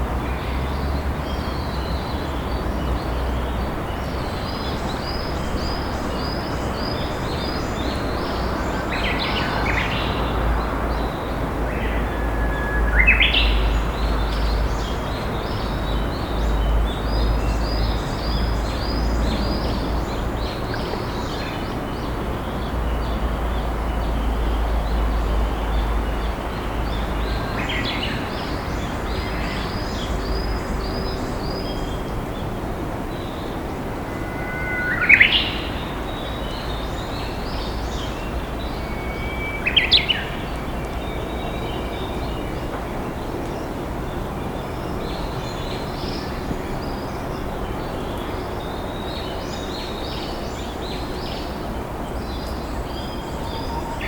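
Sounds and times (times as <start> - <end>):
river flowing: 0.0 - 54.0
birds chirping: 0.4 - 54.0
bird whistling song: 12.0 - 14.6, 33.2 - 40.6.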